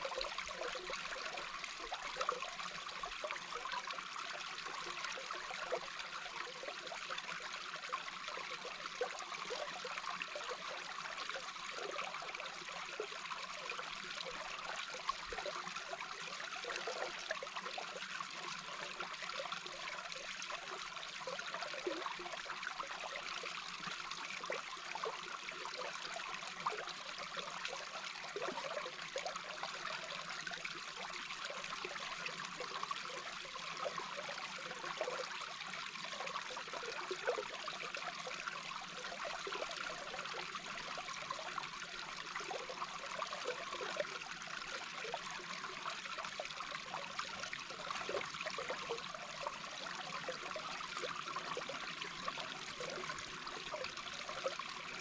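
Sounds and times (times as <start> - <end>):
gurgles and bubbles: 0.0 - 55.0
underwater rush of flowing water: 26.4 - 55.0.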